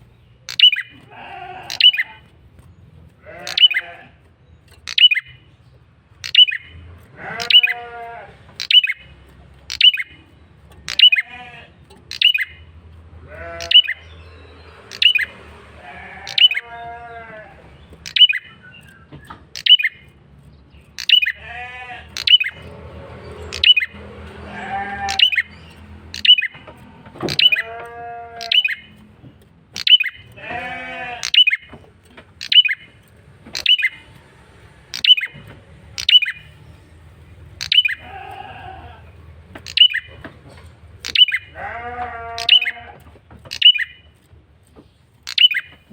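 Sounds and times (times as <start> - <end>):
bird bleating buzzy call: 0.7 - 2.3, 3.2 - 4.3, 7.1 - 8.7, 13.3 - 14.0, 15.8 - 17.6, 24.4 - 25.5, 27.3 - 28.9, 30.4 - 31.6, 37.7 - 39.9, 41.1 - 43.0.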